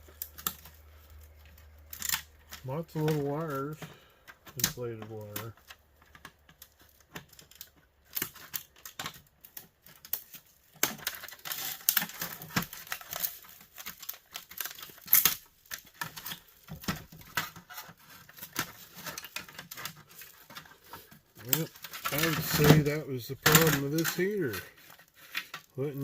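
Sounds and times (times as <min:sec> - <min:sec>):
crinkling and rustling: 0:00.0 - 0:26.0
plastic clicks and knocks: 0:03.8 - 0:25.7.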